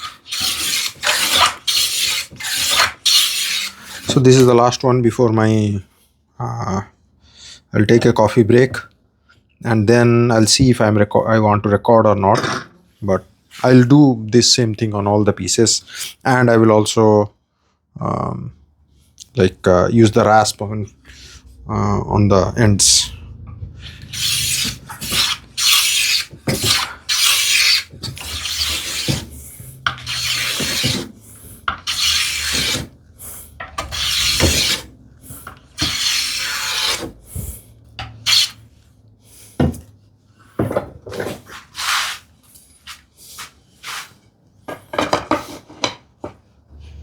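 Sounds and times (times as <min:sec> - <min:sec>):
wood rasp filing: 0:00.0 - 0:04.4, 0:23.8 - 0:37.5, 0:38.2 - 0:38.6.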